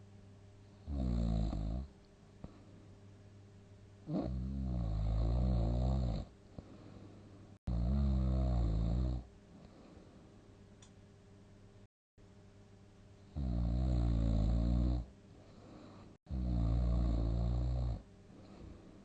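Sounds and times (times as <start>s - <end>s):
loud snoring: 0.8s - 1.9s, 4.1s - 6.3s, 7.7s - 9.3s, 13.3s - 15.1s, 16.3s - 18.0s.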